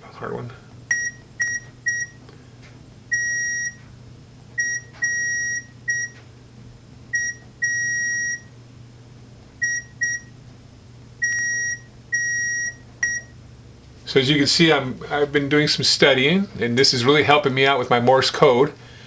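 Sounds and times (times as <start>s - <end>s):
faint low hum: 0.0s - 19.0s
morse code beeps: 0.9s - 2.2s, 3.1s - 3.8s, 4.6s - 6.2s, 7.1s - 8.5s, 9.6s - 10.3s, 11.2s - 13.3s.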